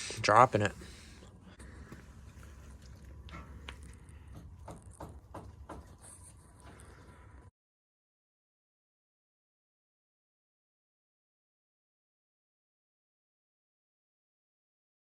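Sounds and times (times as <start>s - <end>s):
low hum: 0.0s - 7.5s.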